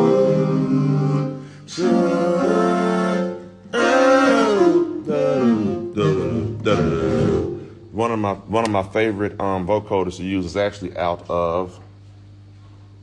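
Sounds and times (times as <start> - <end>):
vocoder singing: 0.0 - 8.6.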